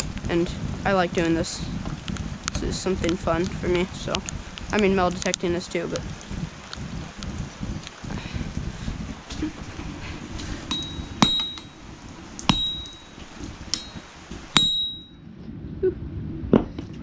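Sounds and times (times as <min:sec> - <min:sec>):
hammer striking metal on anvil: 0:10.7 - 0:11.7, 0:12.5 - 0:13.0, 0:13.8 - 0:14.0, 0:14.6 - 0:15.1.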